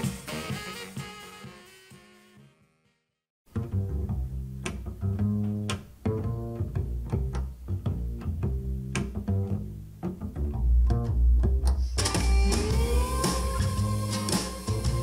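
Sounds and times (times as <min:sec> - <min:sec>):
deep plucked bass notes: 0:03.5 - 0:15.0.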